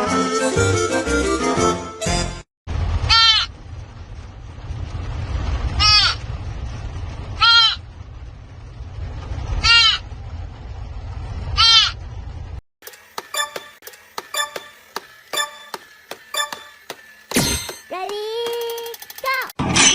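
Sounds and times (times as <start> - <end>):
low rumble: 2.7 - 12.6.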